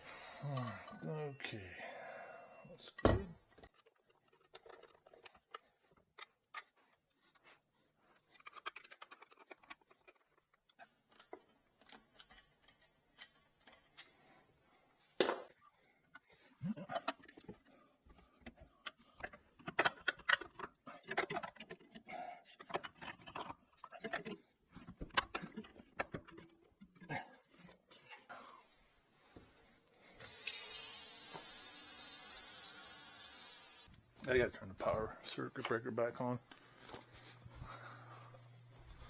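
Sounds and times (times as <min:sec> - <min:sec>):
objects clicking and knocking: 0:03.0 - 0:06.9, 0:16.2 - 0:27.8.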